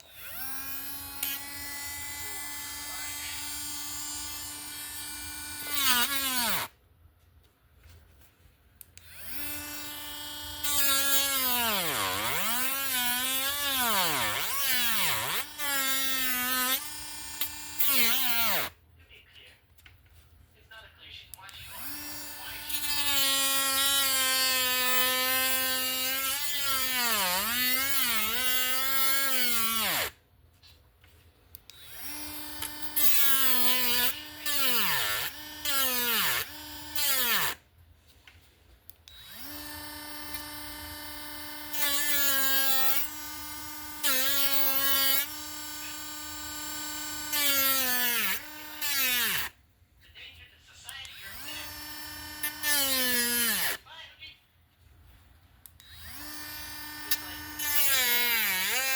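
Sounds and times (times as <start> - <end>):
rotary tool rasping into wood: 0.0 - 6.7, 9.0 - 18.7, 21.6 - 30.1, 31.7 - 37.6, 39.1 - 49.5, 51.2 - 53.8, 55.8 - 58.9
rotary tool whining: 0.0 - 6.8, 8.9 - 18.8, 21.5 - 30.2, 31.6 - 37.7, 38.9 - 49.6, 50.9 - 53.8, 55.7 - 58.9.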